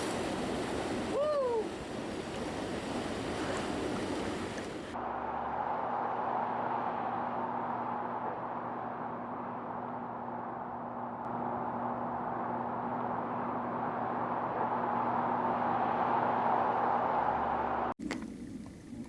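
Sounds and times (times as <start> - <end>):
flowing water rushing: 0.0 - 5.0.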